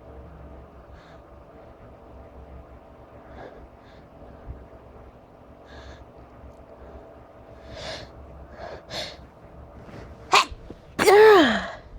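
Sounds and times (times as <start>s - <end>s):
person gasping before sneeze: 10.3s - 11.8s
sneeze: 10.3s - 11.8s.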